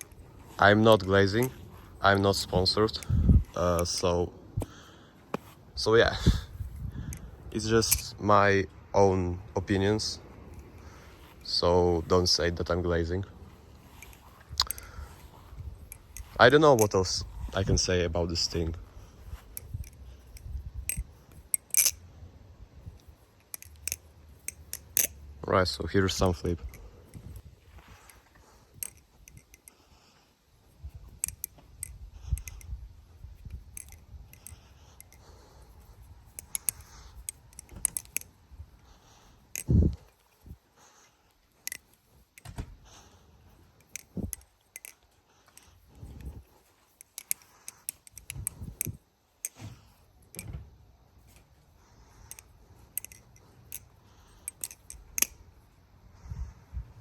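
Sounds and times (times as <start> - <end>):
butterfly knife clicking: 13.9 - 17.8, 18.4 - 22.0, 22.9 - 25.3, 26.2 - 29.8, 30.8 - 40.4, 41.6 - 43.0, 43.7 - 49.6, 51.3 - 55.5.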